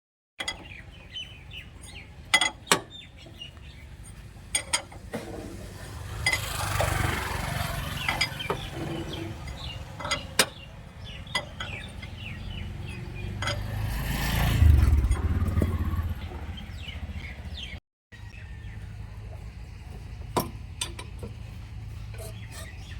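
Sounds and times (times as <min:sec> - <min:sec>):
tools clanking on metal parts: 0:00.4 - 0:00.8, 0:01.8 - 0:03.4, 0:04.0 - 0:06.9, 0:08.0 - 0:10.6, 0:11.2 - 0:12.2, 0:12.9 - 0:13.8, 0:20.2 - 0:21.5
small birds chirping: 0:00.4 - 0:05.0, 0:05.8 - 0:22.9
low engine rumble: 0:00.4 - 0:22.9.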